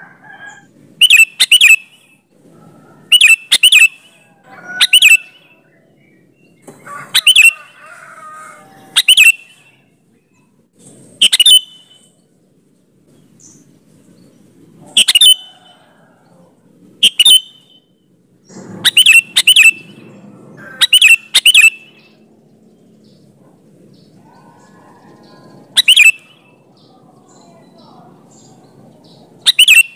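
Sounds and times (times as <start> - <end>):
bird calling sharp notes: 0.6 - 2.2, 3.0 - 5.6, 6.6 - 9.8, 11.2 - 12.1, 14.8 - 15.7, 17.0 - 22.2, 24.2 - 26.9, 27.7 - 29.9.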